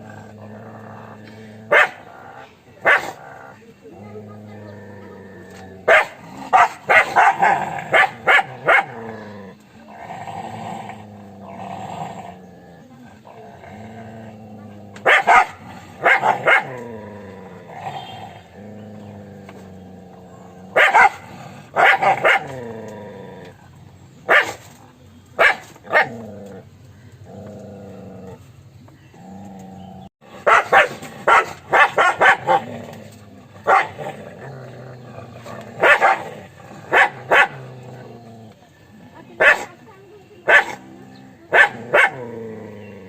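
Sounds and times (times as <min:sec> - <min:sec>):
dog barking: 0:01.7 - 0:02.1, 0:02.8 - 0:03.2, 0:05.8 - 0:09.0, 0:15.0 - 0:16.8, 0:20.8 - 0:21.2, 0:21.8 - 0:22.6, 0:24.3 - 0:24.6, 0:25.4 - 0:26.2, 0:30.4 - 0:32.7, 0:33.6 - 0:34.0, 0:35.8 - 0:36.2, 0:36.9 - 0:37.6, 0:39.4 - 0:39.8, 0:40.5 - 0:40.8, 0:41.5 - 0:42.3.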